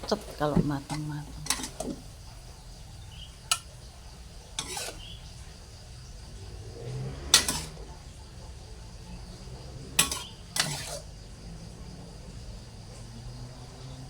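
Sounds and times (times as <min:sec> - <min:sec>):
spatula scraping cooking pan: 0:00.0 - 0:11.4.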